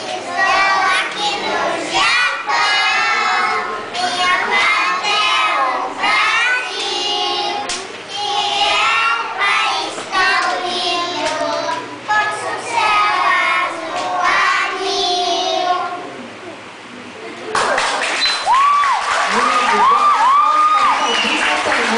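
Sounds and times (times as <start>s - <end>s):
children singing together: 0.0s - 16.1s.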